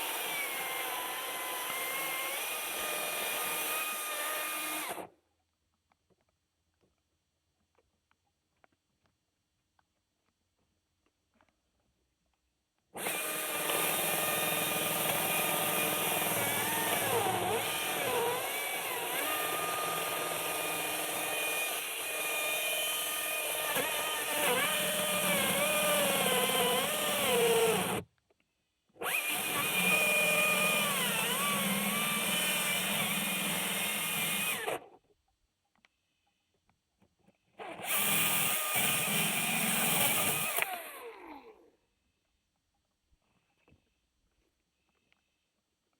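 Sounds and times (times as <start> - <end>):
electric chainsaw running: 13.0 - 28.0, 29.0 - 34.8, 37.8 - 41.3.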